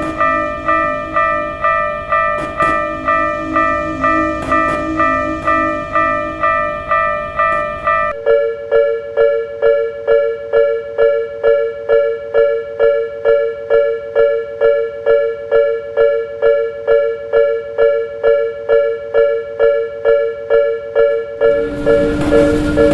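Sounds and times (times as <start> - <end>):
level crossing alarm two-tone ding: 0.0 - 8.1.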